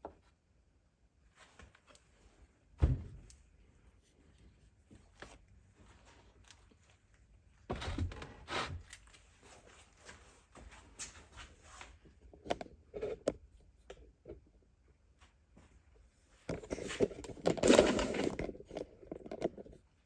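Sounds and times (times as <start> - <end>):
rustling scrape: 16.6 - 18.6.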